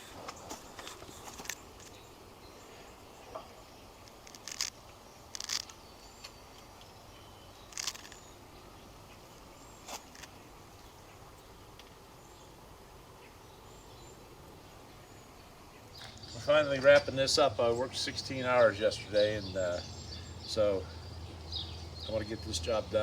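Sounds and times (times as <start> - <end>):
faint bird chirps: 5.1 - 23.0.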